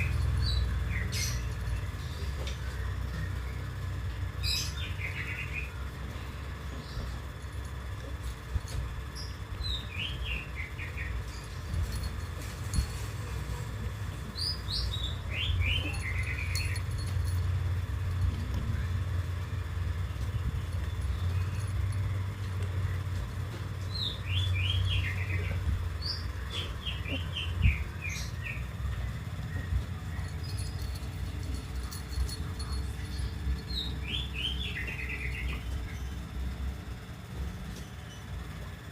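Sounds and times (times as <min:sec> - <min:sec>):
small bird chirping: 0:00.0 - 0:05.9, 0:09.0 - 0:12.9, 0:14.1 - 0:17.4, 0:20.0 - 0:36.5
steady low rumble: 0:00.0 - 0:38.9.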